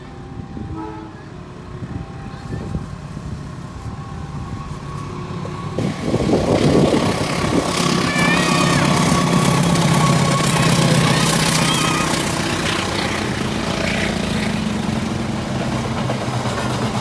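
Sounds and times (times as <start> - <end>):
diesel locomotive engine: 0.0 - 17.0
wheels rushing on rails: 0.0 - 17.0
thin high squeal: 7.4 - 14.6.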